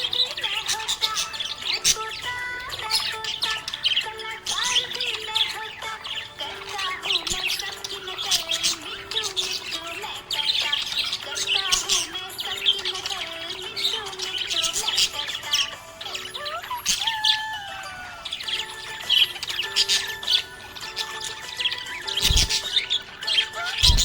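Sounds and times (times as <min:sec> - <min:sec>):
background music: 0:00.0 - 0:24.0
budgerigars chirping: 0:00.0 - 0:24.0.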